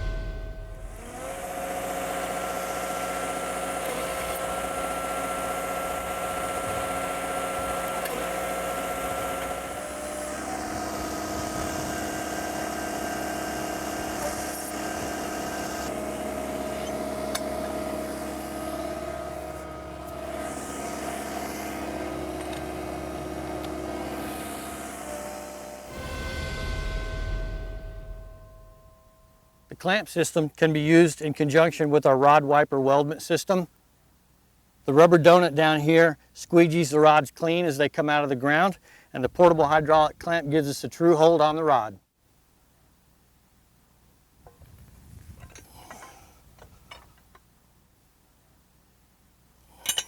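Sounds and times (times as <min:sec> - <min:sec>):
probe machine engine and hydraulics: 0:00.0 - 0:29.2.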